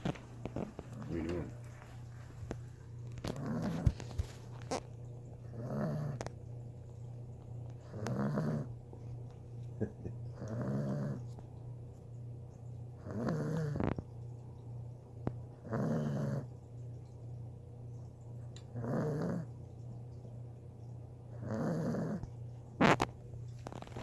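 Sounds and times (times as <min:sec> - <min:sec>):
puppy snoring loudly: 0:00.0 - 0:06.4, 0:07.7 - 0:09.0, 0:09.8 - 0:11.4, 0:13.0 - 0:14.1, 0:15.5 - 0:16.5, 0:18.6 - 0:19.6, 0:21.3 - 0:24.0
steady low hum: 0:00.0 - 0:24.0.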